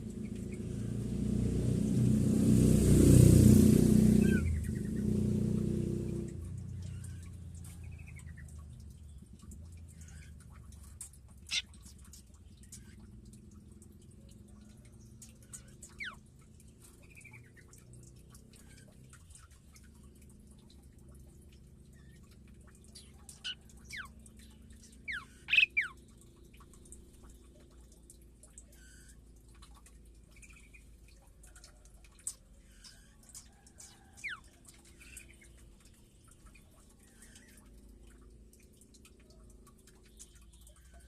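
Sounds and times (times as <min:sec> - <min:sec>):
birds chirping: 0:04.1 - 0:05.2, 0:11.4 - 0:13.1, 0:22.0 - 0:27.4.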